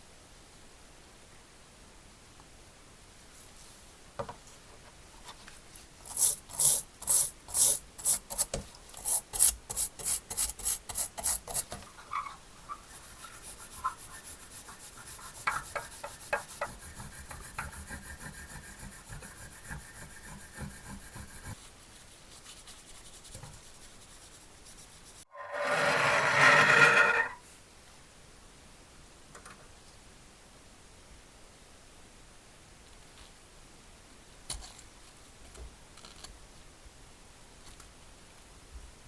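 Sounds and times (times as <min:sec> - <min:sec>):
steady rubbing: 0:06.0 - 0:21.7, 0:22.4 - 0:27.4
rasp strokes on wood: 0:06.1 - 0:21.6.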